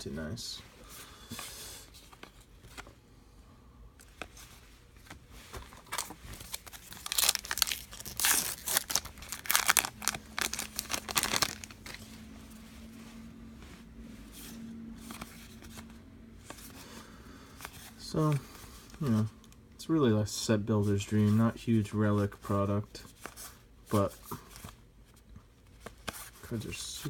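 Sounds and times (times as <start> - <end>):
wrapper tearing and crinkling: 5.9 - 12.0.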